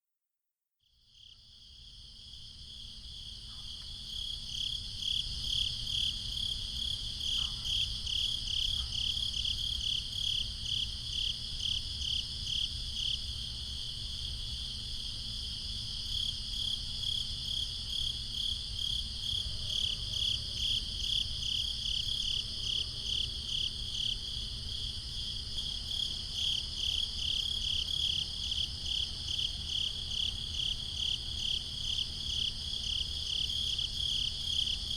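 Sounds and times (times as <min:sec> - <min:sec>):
crickets chirping: 0:01.2 - 0:34.9.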